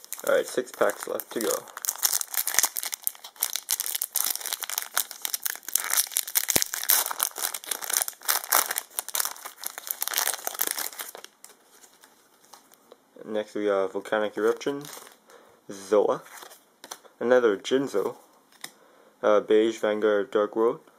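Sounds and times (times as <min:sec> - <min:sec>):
plastic wrapper crinkling and tearing: 0:00.0 - 0:12.8, 0:14.5 - 0:15.2.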